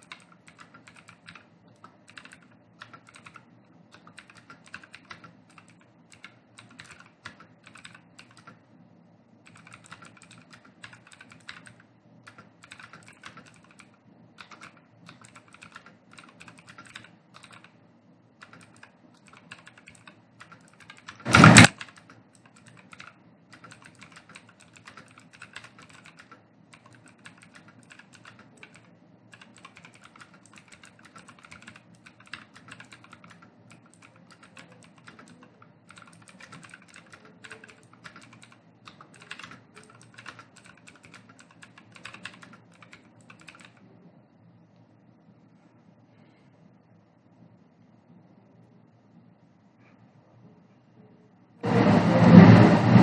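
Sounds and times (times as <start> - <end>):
keyboard typing: 0.0 - 8.7, 9.4 - 17.8, 18.4 - 43.9
loud thump: 21.3 - 21.7.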